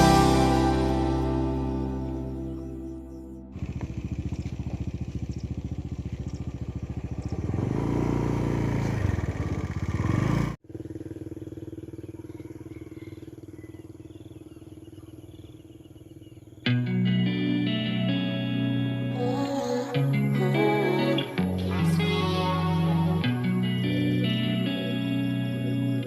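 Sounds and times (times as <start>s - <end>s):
small engine running: 3.1s - 16.5s.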